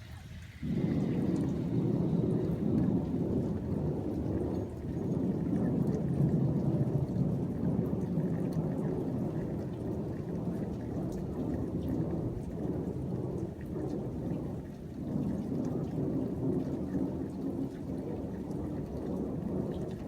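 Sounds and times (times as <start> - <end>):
low rumble: 0.0 - 14.2.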